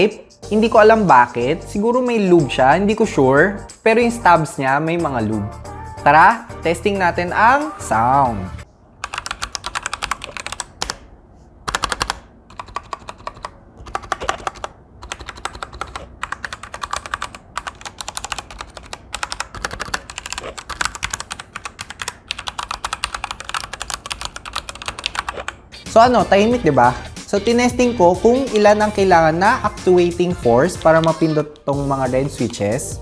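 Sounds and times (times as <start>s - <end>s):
quiet keyboard typing: 9.0s - 25.6s.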